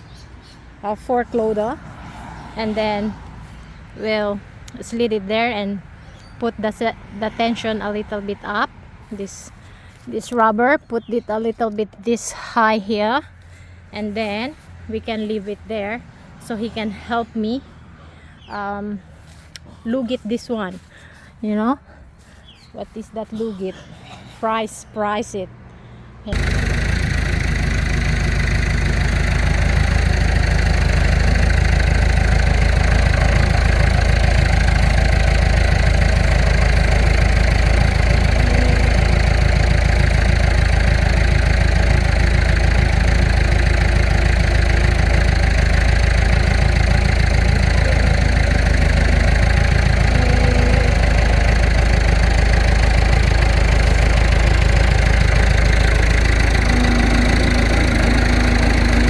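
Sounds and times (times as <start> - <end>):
heavy machine engine idling: 26.3 - 59.0.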